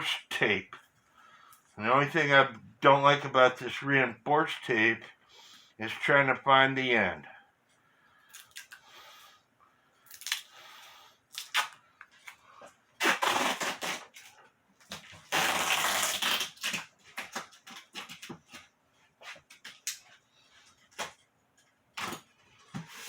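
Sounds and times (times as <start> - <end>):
packing tape ripping off roll: 11.3 - 12.4, 13.0 - 18.3, 22.0 - 22.3.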